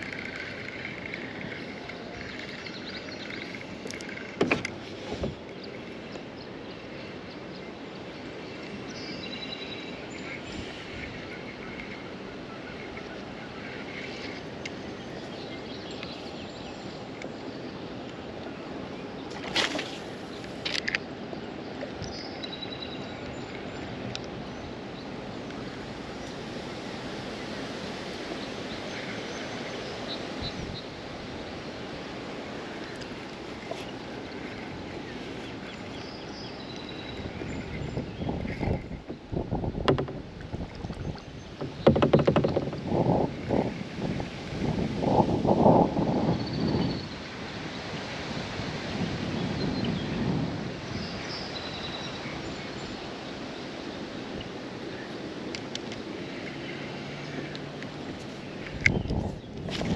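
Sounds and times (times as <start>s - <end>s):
paddle splashes: 0.0s - 7.5s, 8.1s - 17.1s, 18.4s - 22.6s, 25.3s - 45.8s, 50.9s - 59.9s
wind noise on microphone: 4.4s - 5.5s, 30.3s - 32.2s, 37.0s - 53.0s, 57.6s - 59.9s
water rushing: 23.0s - 46.3s, 47.0s - 59.9s
sharp knocks: 41.6s - 42.9s.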